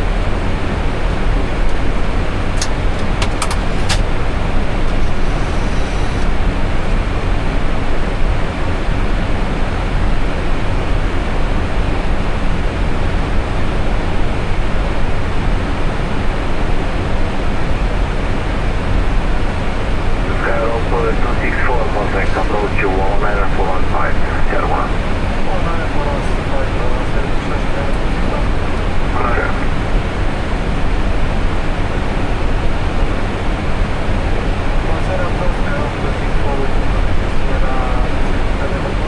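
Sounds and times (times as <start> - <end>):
cockpit air rush and engine noise: 0.2 - 8.1, 18.8 - 39.0
sharp clicks: 2.5 - 5.0.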